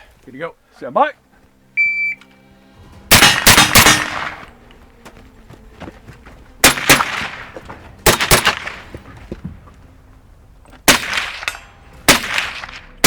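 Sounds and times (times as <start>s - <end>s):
gunshots with echoing tail: 3.1s - 4.5s, 6.6s - 9.4s, 10.8s - 13.0s.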